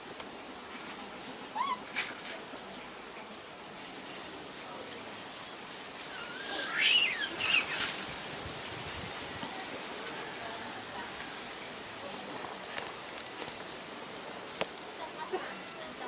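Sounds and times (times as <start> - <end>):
steady low hiss: 0.0 - 16.0
monkey squealing: 6.1 - 8.0.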